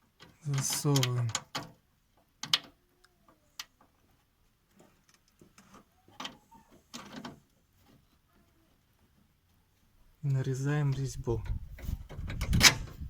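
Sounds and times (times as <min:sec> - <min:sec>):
metallic clicks and scrapes: 0:00.2 - 0:01.8, 0:11.4 - 0:13.0
faint squeak: 0:05.7 - 0:07.2.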